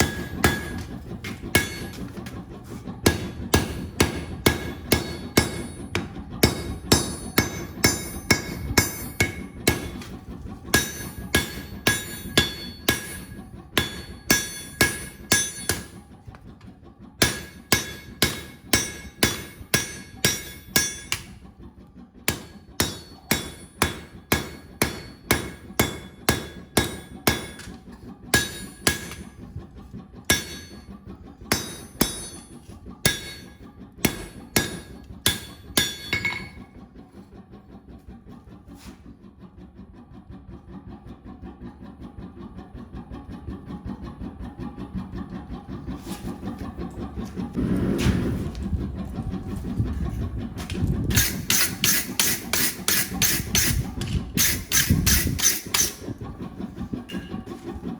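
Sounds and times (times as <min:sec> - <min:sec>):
hammer striking steel on anvil: 0:00.0 - 0:10.1, 0:10.7 - 0:16.0, 0:17.2 - 0:21.4, 0:22.3 - 0:29.4, 0:30.3 - 0:30.9, 0:31.5 - 0:36.7, 0:51.1 - 0:56.0.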